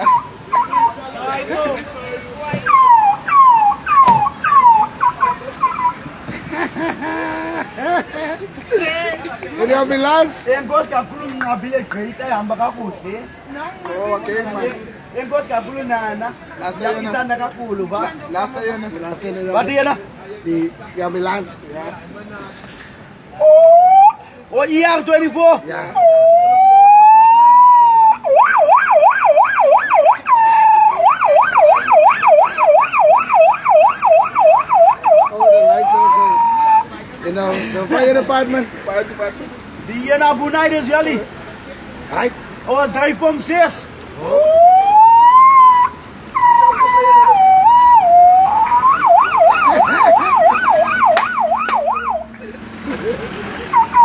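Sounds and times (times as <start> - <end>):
man imitating siren with voice: 0.0 - 1.5, 2.6 - 6.0, 23.4 - 24.2, 26.0 - 36.9, 44.2 - 52.3, 53.7 - 54.0.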